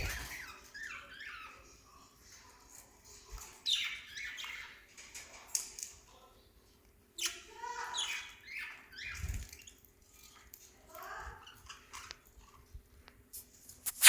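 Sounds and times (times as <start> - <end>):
parrots squawking: 0.0 - 1.8
parrots chirping softly: 0.0 - 14.0.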